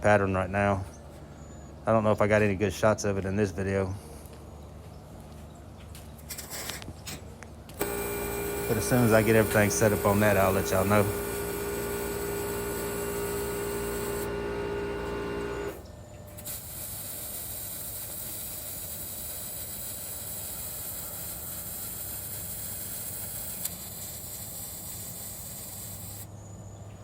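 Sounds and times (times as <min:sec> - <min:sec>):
machine hum with strong tone: 0:07.8 - 0:26.2
steady hiss: 0:16.4 - 0:26.3.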